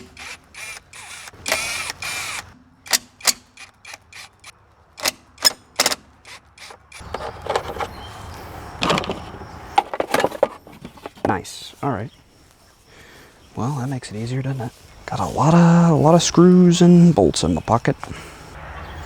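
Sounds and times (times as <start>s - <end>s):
hand tools clicking and knocking: 0.0s - 8.0s, 8.8s - 11.4s.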